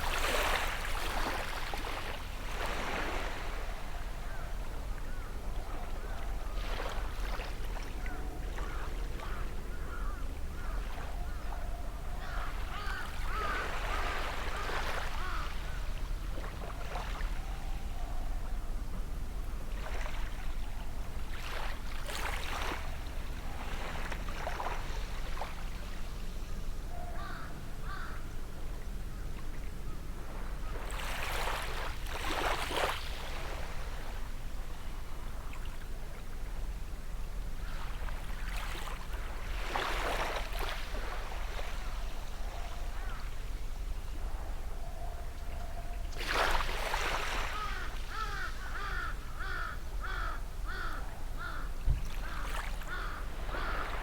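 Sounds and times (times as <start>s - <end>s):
faint bird calls: 3.2s - 18.7s, 26.7s - 31.5s, 39.9s - 54.0s.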